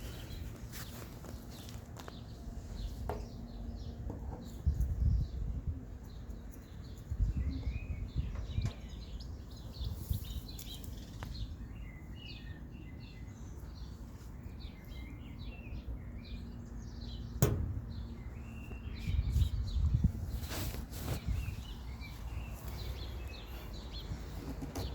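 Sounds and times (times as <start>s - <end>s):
birds chirping: 0.0s - 24.9s
sharp click: 17.4s - 17.8s.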